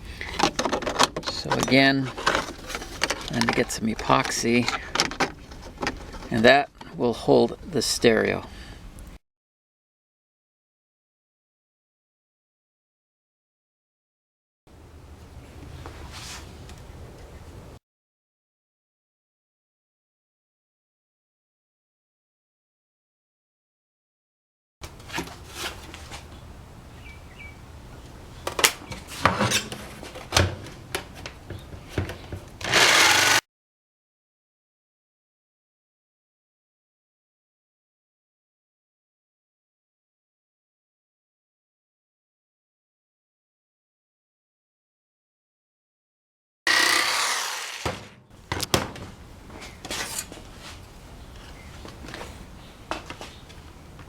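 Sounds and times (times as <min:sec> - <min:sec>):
small power tool whining: 0:32.6 - 0:33.4, 0:46.7 - 0:48.0.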